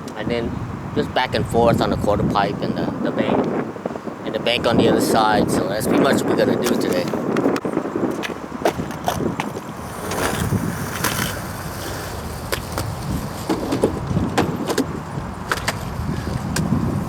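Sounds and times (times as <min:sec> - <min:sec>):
skateboard wheels rumbling: 0:00.0 - 0:17.0
sharp clicks and clacks: 0:15.5 - 0:15.9.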